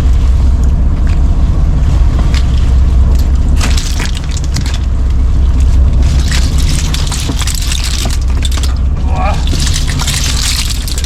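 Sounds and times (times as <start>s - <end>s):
boat engine drone: 0.0s - 11.0s
fishing gear knocking and rattling: 2.2s - 11.0s.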